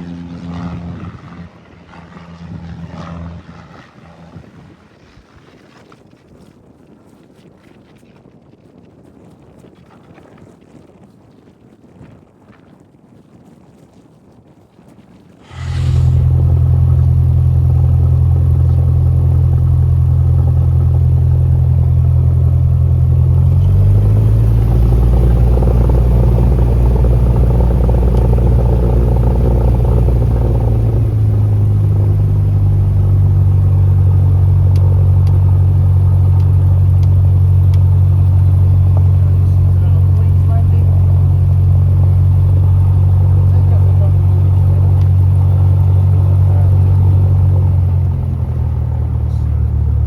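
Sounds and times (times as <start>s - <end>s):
aircraft engine and propeller droning: 0.0s - 5.6s, 15.4s - 50.0s.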